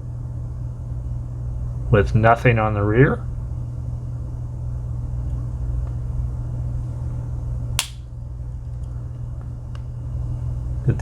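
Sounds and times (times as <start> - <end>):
steady low hum: 0.0 - 11.0
sharp click: 7.8 - 8.0.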